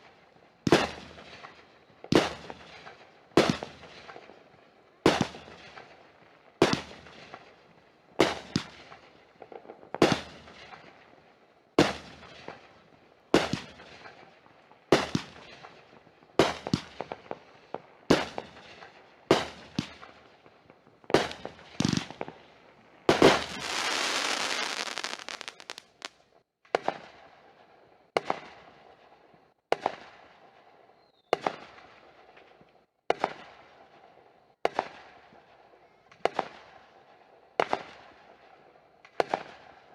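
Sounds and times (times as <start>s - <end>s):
hissing crackle of fireworks: 0.0s - 39.9s
fireworks booming: 21.1s - 22.4s, 23.1s - 26.1s.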